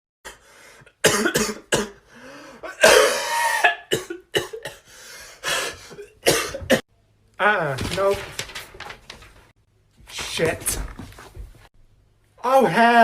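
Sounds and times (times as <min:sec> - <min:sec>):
person coughing: 0:01.0 - 0:02.0, 0:02.6 - 0:04.9, 0:05.5 - 0:06.8.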